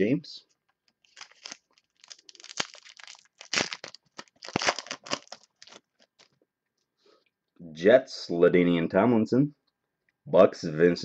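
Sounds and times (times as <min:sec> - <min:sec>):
card pack wrapper tearing: 0:01.0 - 0:06.3.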